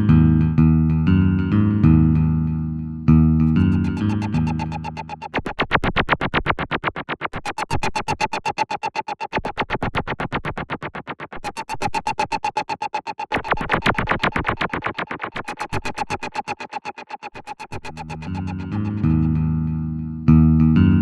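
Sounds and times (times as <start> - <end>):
pulsing electronic music: 3.4 - 19.8.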